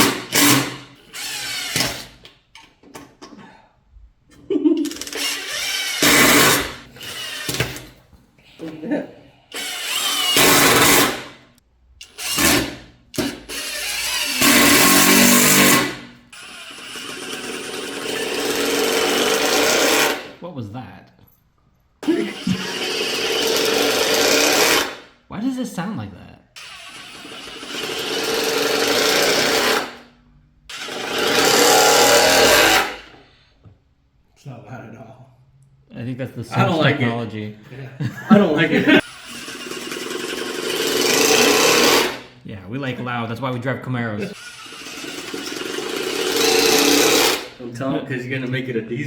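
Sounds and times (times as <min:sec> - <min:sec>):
cordless impact driver running: 0:00.0 - 0:02.2, 0:04.8 - 0:07.9, 0:09.5 - 0:11.4, 0:12.0 - 0:20.3, 0:22.0 - 0:25.1, 0:26.6 - 0:30.0, 0:30.7 - 0:33.1, 0:39.0 - 0:42.3, 0:44.3 - 0:47.6
impact drivers hammering: 0:00.0 - 0:03.1, 0:04.9 - 0:08.0, 0:09.6 - 0:11.4, 0:12.0 - 0:20.3.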